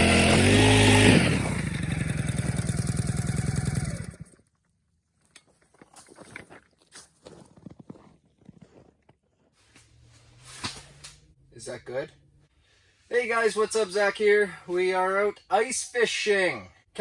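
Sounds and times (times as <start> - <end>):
engine running and winding down: 0.0 - 4.3
faint clicks and scrapes: 4.3 - 11.2.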